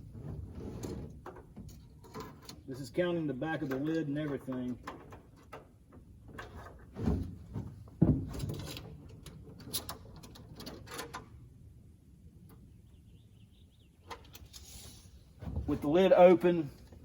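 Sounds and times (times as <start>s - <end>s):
light clatter: 0.0s - 11.4s.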